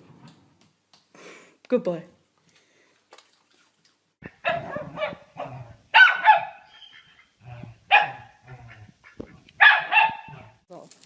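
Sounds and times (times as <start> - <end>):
dog barking: 4.4 - 6.9, 7.9 - 8.8, 9.6 - 10.6.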